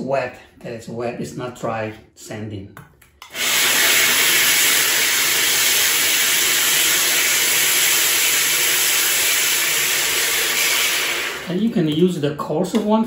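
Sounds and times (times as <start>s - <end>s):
pot grinding on sanding disc: 3.3s - 11.6s.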